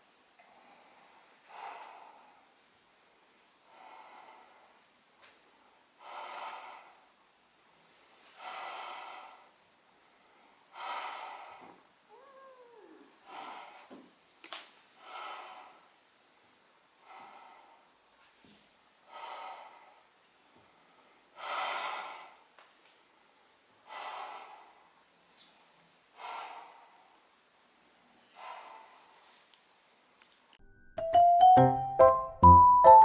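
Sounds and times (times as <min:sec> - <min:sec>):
cat snuffling breaths: 0:00.5 - 0:02.6, 0:05.9 - 0:07.2, 0:08.2 - 0:11.8, 0:13.0 - 0:13.9, 0:15.0 - 0:16.0, 0:17.0 - 0:18.0, 0:19.0 - 0:22.5, 0:23.8 - 0:25.1, 0:26.1 - 0:27.3, 0:28.0 - 0:29.5.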